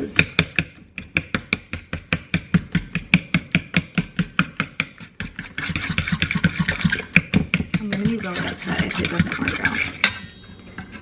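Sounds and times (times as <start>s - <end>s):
utensil stirring batter in bowl: 0.0s - 11.0s
grainy scraping: 4.9s - 10.0s.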